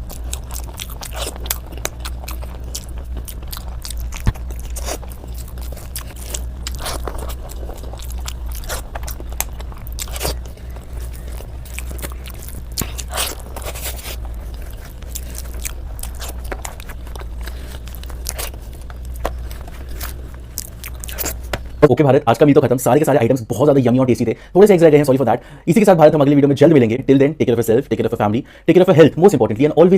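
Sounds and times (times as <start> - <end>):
person chewing crunchy food: 0.0 - 21.8
steady low hum: 0.0 - 29.9.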